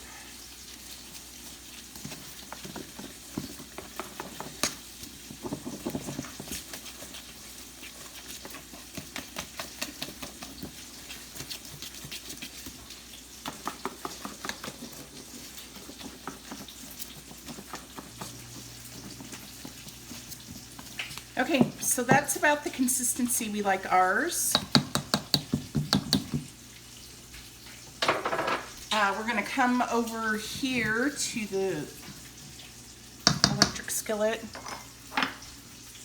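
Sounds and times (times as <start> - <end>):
whisk scraping batter in bowl: 0.9 - 23.7.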